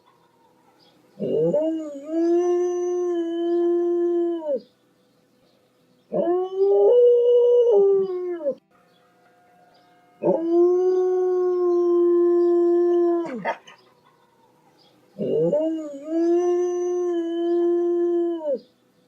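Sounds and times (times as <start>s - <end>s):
dog howling: 1.2s - 4.6s, 10.2s - 13.8s, 15.2s - 18.6s.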